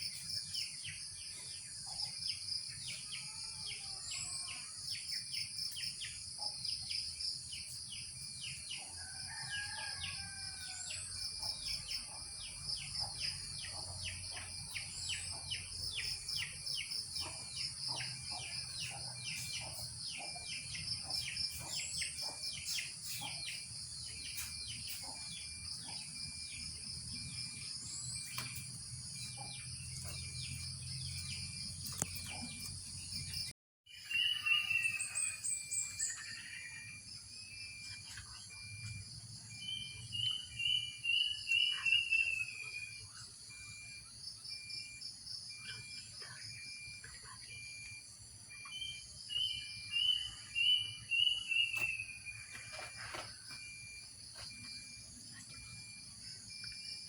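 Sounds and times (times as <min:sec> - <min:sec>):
bird chirps: 0:00.0 - 0:57.0.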